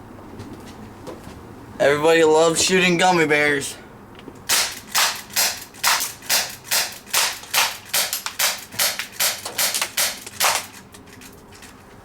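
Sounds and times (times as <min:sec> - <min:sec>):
airsoft pistol shots: 0:04.5 - 0:10.8.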